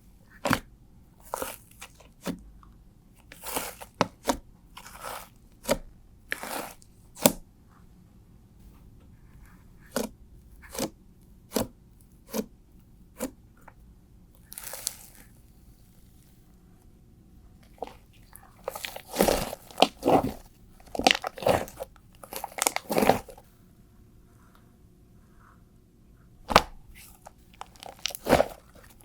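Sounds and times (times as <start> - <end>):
slime squishing crunchily: 0.3 - 2.4, 3.2 - 7.4, 14.4 - 16.3, 17.6 - 23.4, 26.5 - 29.0.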